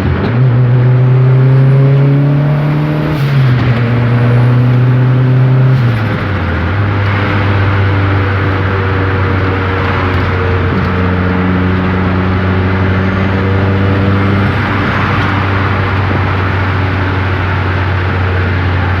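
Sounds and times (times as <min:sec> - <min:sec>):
car engine droning: 0:00.0 - 0:19.0
road and tyre noise: 0:00.0 - 0:19.0.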